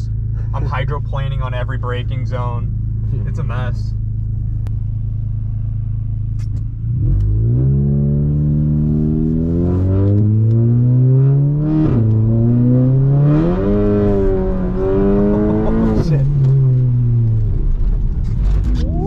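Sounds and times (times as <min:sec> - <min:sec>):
car engine accelerating hard: 0:03.8 - 0:19.0.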